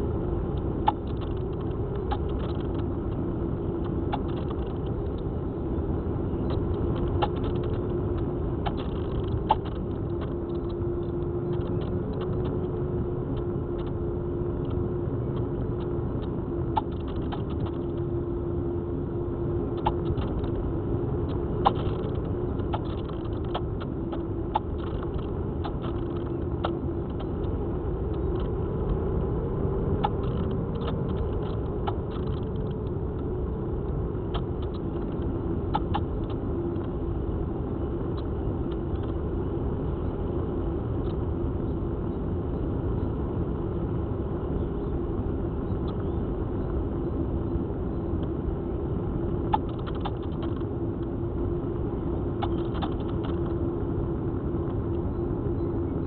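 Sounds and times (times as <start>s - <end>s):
faint ticks: 6.5s - 12.7s, 15.4s - 18.1s, 21.2s - 27.5s, 30.0s - 33.3s, 49.4s - 50.7s, 52.4s - 53.6s.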